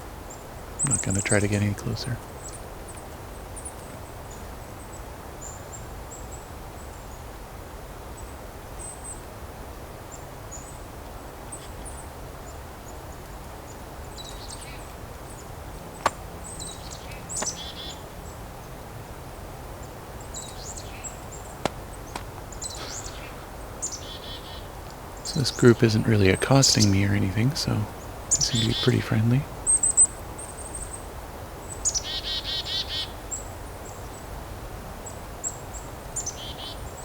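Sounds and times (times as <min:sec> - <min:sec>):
low steady hiss: 0:00.0 - 0:37.0
high thin bird calls: 0:21.9 - 0:30.1.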